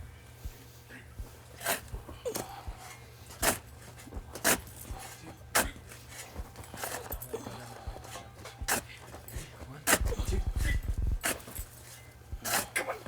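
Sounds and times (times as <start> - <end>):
shovel scraping into soil: 1.5 - 2.5, 3.3 - 9.0, 9.8 - 13.0.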